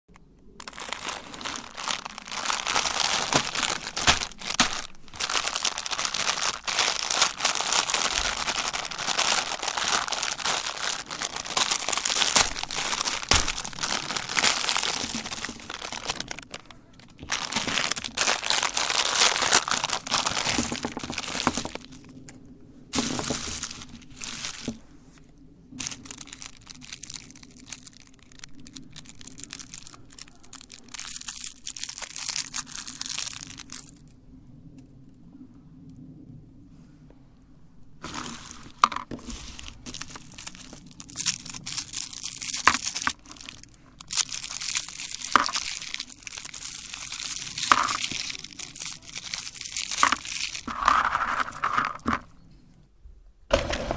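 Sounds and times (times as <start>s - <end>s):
meat grinder crunching candy: 0.6s - 21.9s, 38.0s - 52.2s, 53.5s - 53.9s.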